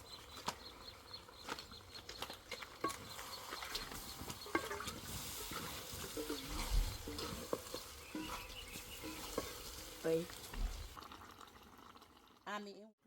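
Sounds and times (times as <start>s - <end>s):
spoon scraping and knocking pot: 2.0s - 11.0s
faint oil sizzling: 2.6s - 12.4s.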